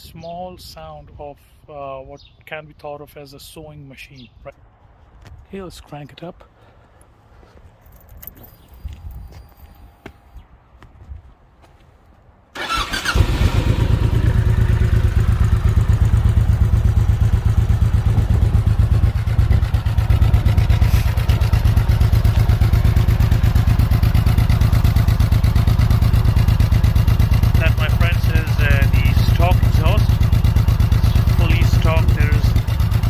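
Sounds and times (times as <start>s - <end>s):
motorcycle engine starting and idling: 12.6s - 33.0s.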